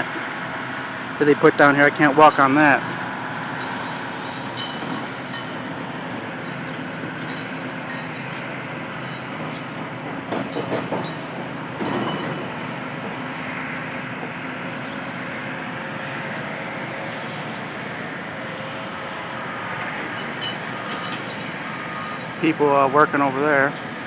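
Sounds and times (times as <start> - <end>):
heavy construction equipment rumble: 0.0 - 24.0
knocks and clanks: 4.6 - 5.7, 6.6 - 13.4.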